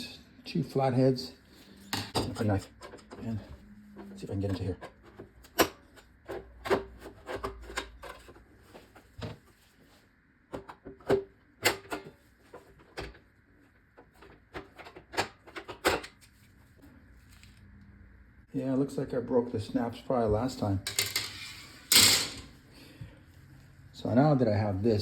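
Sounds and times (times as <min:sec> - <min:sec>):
tools prying and scraping plastic: 0:04.1 - 0:09.0.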